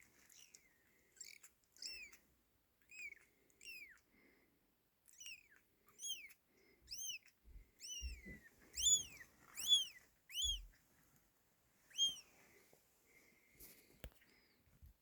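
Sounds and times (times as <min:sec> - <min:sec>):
kittens mewing: 0:05.1 - 0:10.8.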